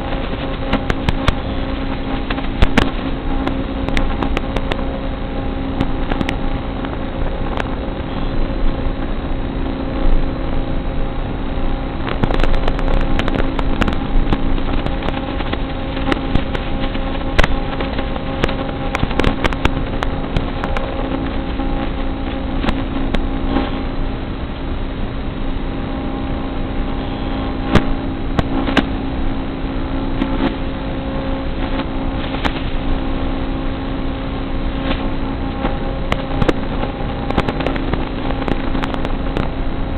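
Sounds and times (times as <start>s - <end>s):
sharp clicks and knocks: 0.0s - 4.9s, 5.8s - 7.8s, 12.0s - 23.8s, 27.7s - 29.0s, 35.6s - 39.6s.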